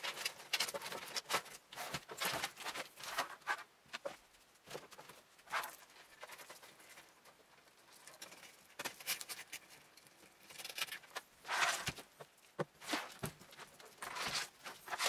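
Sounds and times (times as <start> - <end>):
cables clicking and rustling: 0.0 - 15.0
rasping scrape: 10.6 - 15.0.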